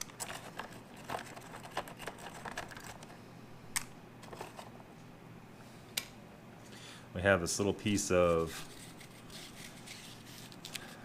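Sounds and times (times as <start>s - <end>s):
packaging rustling: 0.0s - 3.2s, 4.2s - 4.8s.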